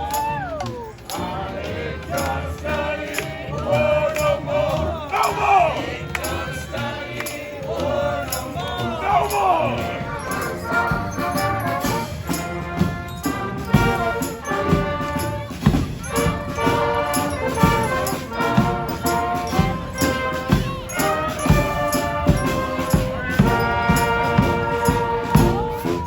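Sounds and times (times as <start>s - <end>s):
brass band horns: 0.0s - 26.0s
steady drum beat: 0.0s - 26.0s.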